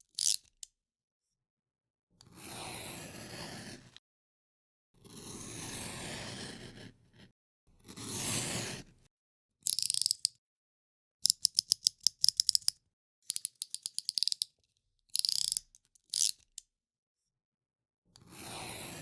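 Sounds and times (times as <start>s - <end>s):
utility knife slider clicking: 0.0s - 0.7s, 9.7s - 10.4s, 11.2s - 14.5s, 15.2s - 16.6s.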